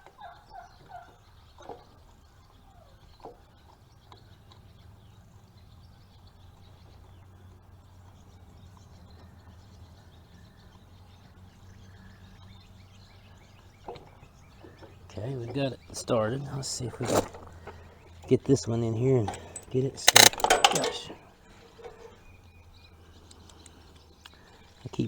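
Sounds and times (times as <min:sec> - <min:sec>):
faint metal clicks: 0:13.8 - 0:22.3, 0:23.1 - 0:25.0.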